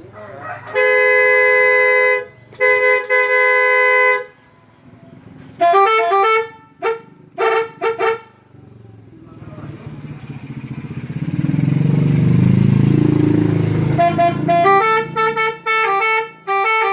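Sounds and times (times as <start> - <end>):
multi-tone vehicle horn: 0.4 - 4.5, 5.5 - 8.5, 13.4 - 16.9.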